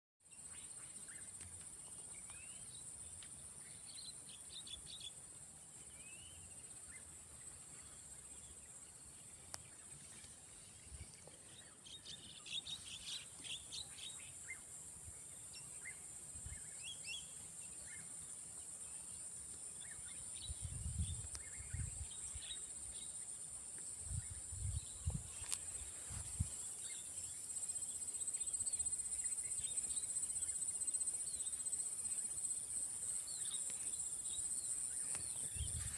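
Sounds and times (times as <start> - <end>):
bird chirps: 0.3 - 14.7.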